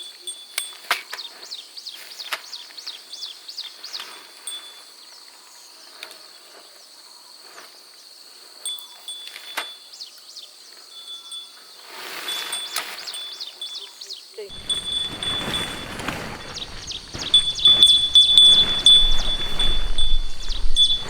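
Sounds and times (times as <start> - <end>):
quick falling chirps: 14.5 - 21.0.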